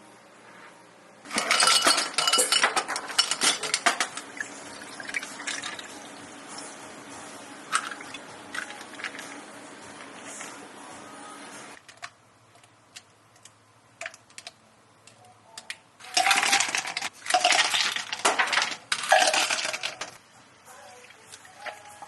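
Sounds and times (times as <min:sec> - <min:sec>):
clinking rattles: 0:01.3 - 0:04.1.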